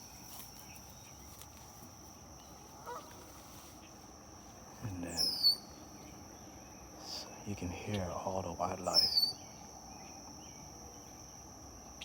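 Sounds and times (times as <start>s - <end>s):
high insect trill: 0.0s - 12.0s
high bird chirp: 5.1s - 6.8s, 8.8s - 10.6s.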